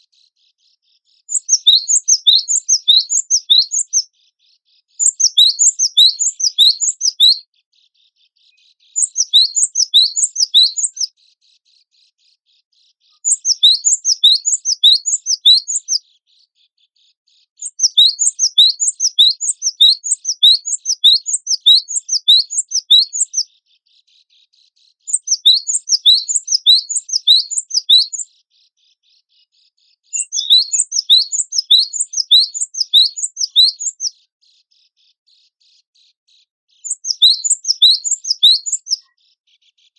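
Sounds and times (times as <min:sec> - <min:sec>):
bird singing rising notes: 0:01.3 - 0:04.0, 0:05.0 - 0:07.4, 0:09.0 - 0:11.1, 0:13.3 - 0:16.0, 0:17.6 - 0:23.4, 0:25.1 - 0:28.2, 0:30.2 - 0:34.1, 0:36.8 - 0:39.0.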